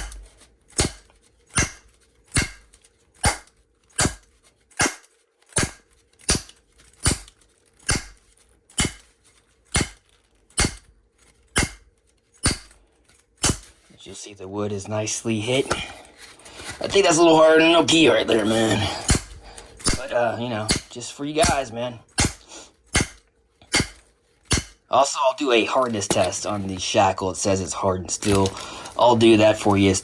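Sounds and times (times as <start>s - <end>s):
wood striking a padlock: 0.0s - 9.1s, 9.7s - 10.9s, 11.5s - 12.8s, 13.4s - 13.7s, 18.9s - 21.6s, 22.2s - 24.8s.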